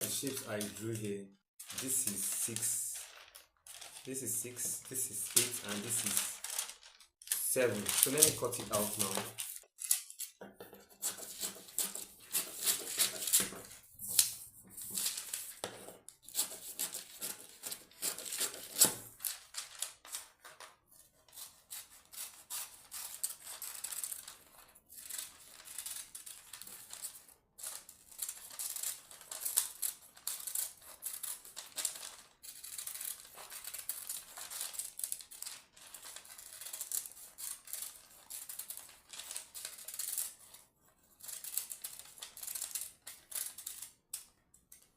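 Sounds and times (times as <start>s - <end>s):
paper rustling: 1.6s - 43.9s
scissors snipping paper: 5.3s - 20.7s, 21.3s - 44.9s.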